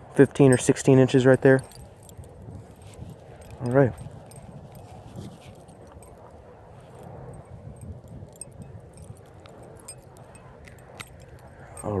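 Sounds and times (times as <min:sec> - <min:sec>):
clothing rustling: 0:01.3 - 0:07.1.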